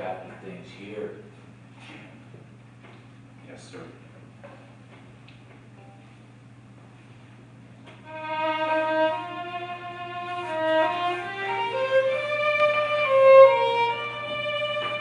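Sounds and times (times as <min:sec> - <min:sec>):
violin playing slow melody: 0:08.0 - 0:15.0.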